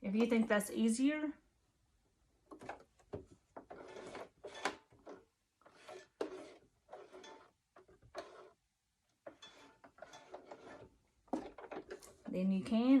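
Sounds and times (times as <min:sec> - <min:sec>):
sewing machine stitching: 0:03.6 - 0:08.6, 0:09.2 - 0:12.1.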